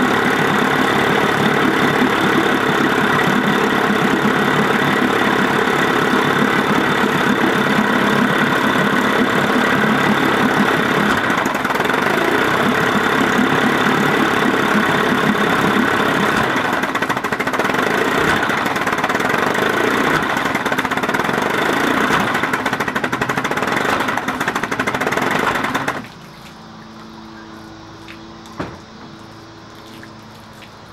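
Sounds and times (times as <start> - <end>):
outboard engine idling: 0.0 - 30.9
faint low hum: 26.0 - 30.9.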